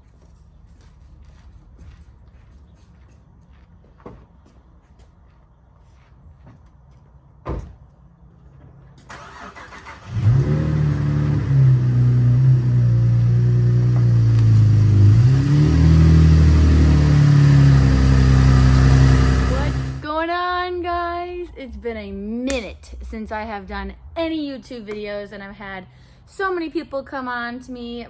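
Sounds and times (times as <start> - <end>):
vehicle engine revving: 9.1 - 20.0.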